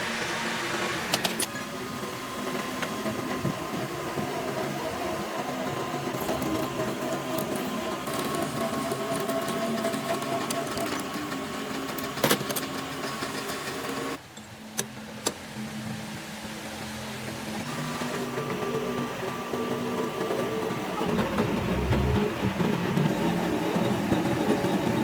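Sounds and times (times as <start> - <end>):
metalworking machine running: 0.0 - 11.7, 17.7 - 25.0.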